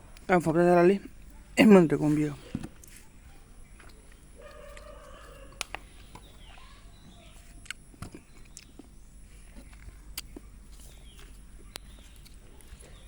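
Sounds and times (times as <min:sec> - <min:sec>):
animal call: 0:04.4 - 0:05.6.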